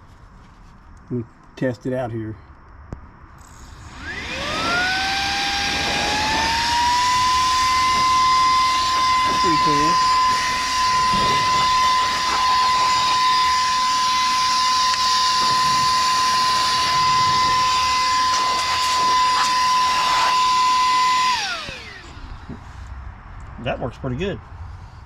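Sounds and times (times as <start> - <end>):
vacuum motor whining: 3.5 - 22.7
rushing air: 3.6 - 23.3.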